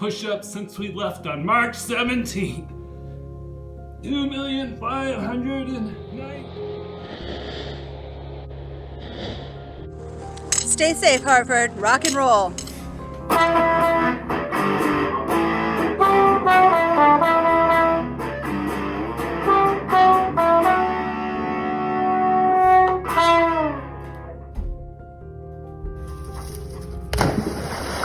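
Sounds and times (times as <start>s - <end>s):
lead guitar playing: 13.2s - 24.3s.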